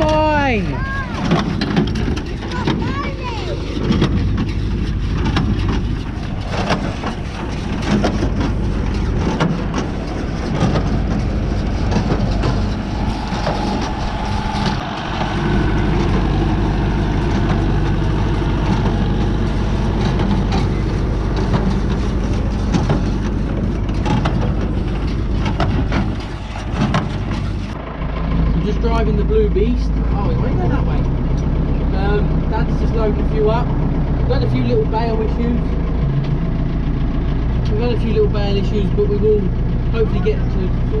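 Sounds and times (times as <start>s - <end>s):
tractor engine running: 0.0s - 41.0s
clicks and knocks: 3.6s - 14.9s, 17.0s - 27.8s.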